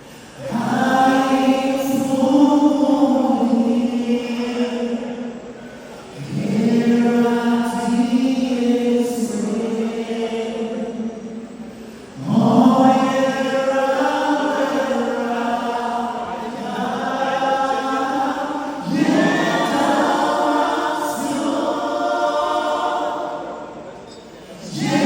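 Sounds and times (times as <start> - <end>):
group of voices singing: 0.0 - 25.0.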